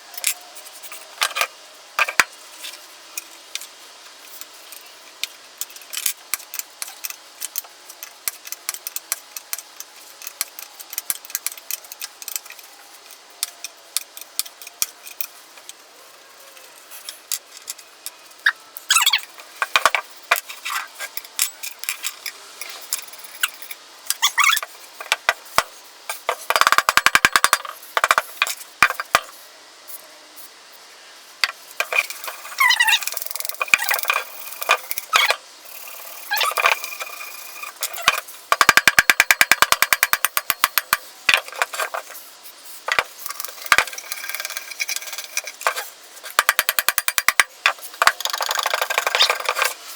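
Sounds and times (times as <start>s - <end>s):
short squeaks: 18.4s - 19.3s, 24.2s - 24.6s, 32.0s - 33.1s, 36.3s - 37.0s, 49.1s - 49.6s.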